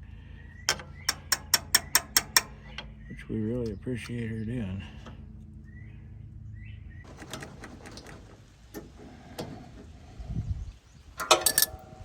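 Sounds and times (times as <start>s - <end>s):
low steady hum: 0.0s - 12.0s
bird chirps: 0.3s - 4.7s, 5.6s - 7.1s
metal clicks on roller chain: 0.7s - 3.0s, 11.2s - 12.0s.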